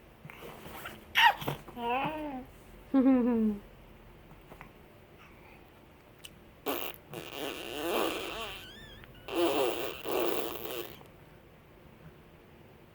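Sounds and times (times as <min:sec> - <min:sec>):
baby sneezing: 0:01.1 - 0:02.0, 0:09.2 - 0:11.0
baby high squeak: 0:06.7 - 0:11.0
baby vocalizing: 0:06.7 - 0:11.1.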